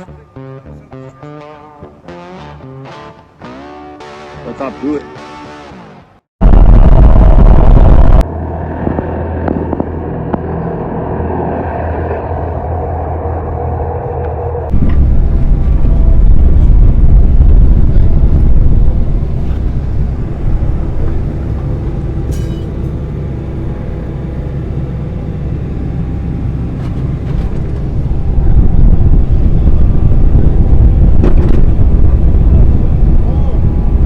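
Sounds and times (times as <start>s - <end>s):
large engine running: 7.6s - 34.0s.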